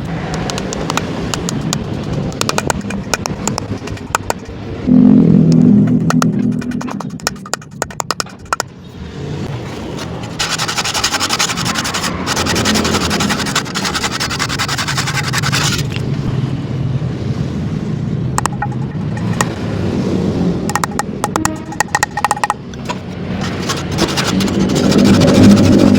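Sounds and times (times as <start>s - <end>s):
quick clicks: 0.3s - 4.6s, 6.1s - 8.7s
tool cutting into wood: 0.4s - 4.5s, 6.0s - 8.7s, 9.9s - 15.9s, 20.7s - 25.9s.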